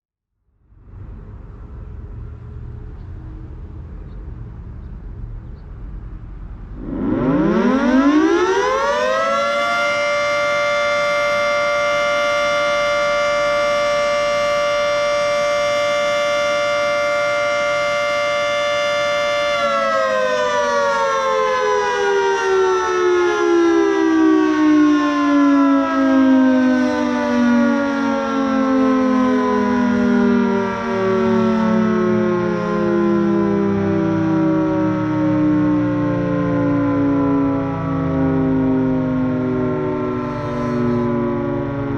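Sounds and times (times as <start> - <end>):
low rumble: 0.4 - 7.3
three-tone warning siren: 6.7 - 41.9.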